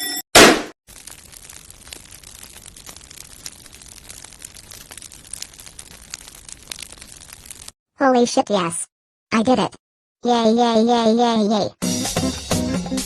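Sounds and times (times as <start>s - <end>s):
fire crackling: 0.8s - 7.8s.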